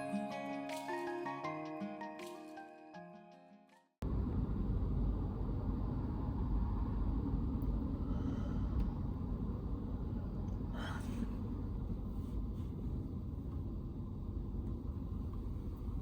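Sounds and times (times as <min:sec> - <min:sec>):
background music: 0:00.0 - 0:03.9
vehicle road noise rumble: 0:04.0 - 0:16.0.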